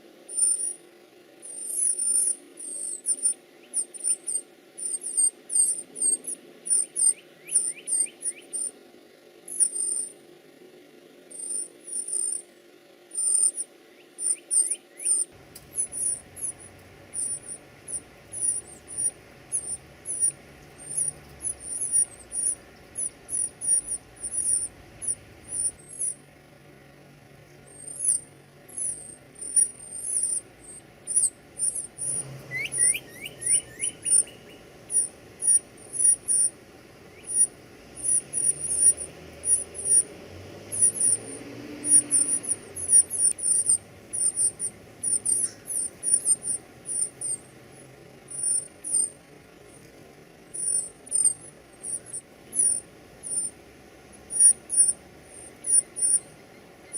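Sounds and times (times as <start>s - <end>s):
baby birds cheeping: 0.0s - 56.9s
lower whistled bird notes: 0.3s - 0.8s, 1.4s - 8.8s, 9.5s - 10.2s, 11.3s - 12.5s, 13.2s - 26.3s, 27.5s - 49.8s, 50.4s - 56.9s.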